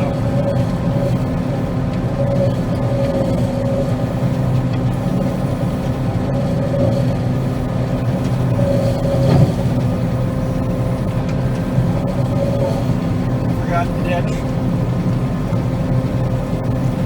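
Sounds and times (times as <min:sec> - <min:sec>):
combine harvester drone: 0:00.0 - 0:17.0.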